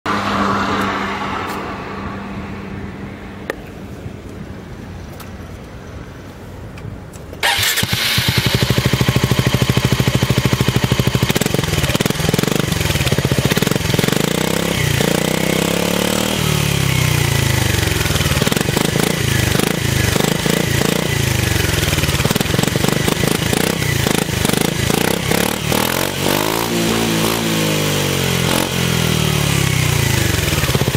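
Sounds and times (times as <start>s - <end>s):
scooter engine revving: 7.4s - 30.9s.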